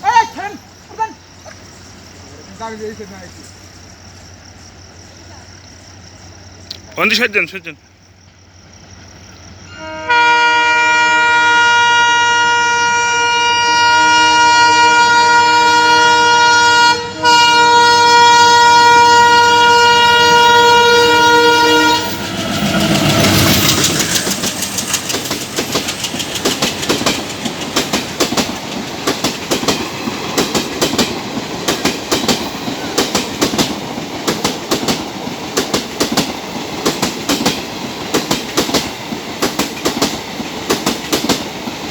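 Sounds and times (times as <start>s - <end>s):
train horn blast: 9.7s - 22.4s.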